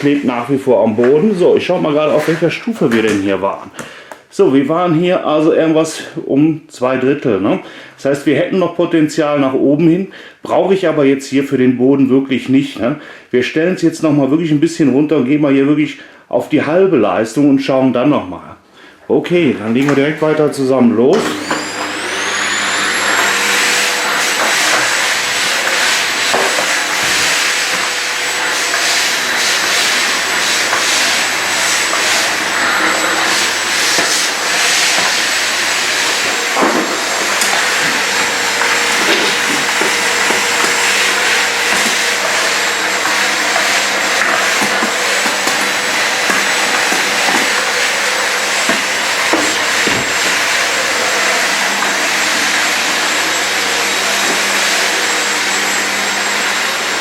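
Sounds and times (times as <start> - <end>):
vacuum cleaner motor whine: 19.7 - 57.0.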